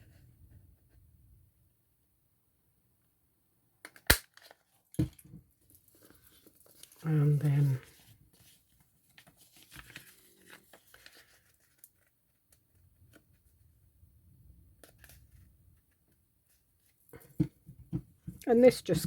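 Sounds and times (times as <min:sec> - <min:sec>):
paper rustling: 0:05.8 - 0:12.2.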